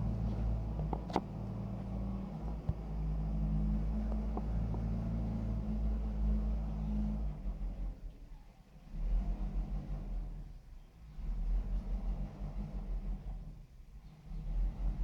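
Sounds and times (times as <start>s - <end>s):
diesel engine running: 0.0s - 7.9s.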